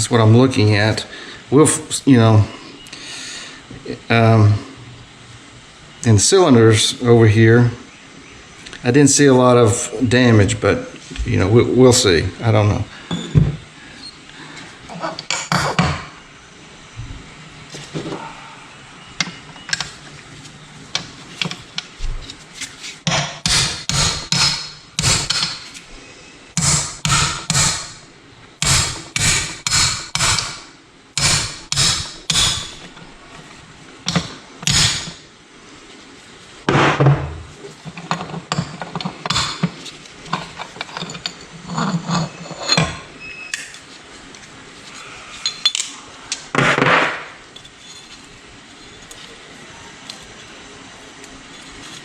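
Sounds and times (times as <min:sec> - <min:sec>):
hammer striking metal: 0:23.1 - 0:25.7, 0:26.6 - 0:28.0, 0:28.6 - 0:32.9, 0:34.1 - 0:35.2, 0:39.3 - 0:39.6.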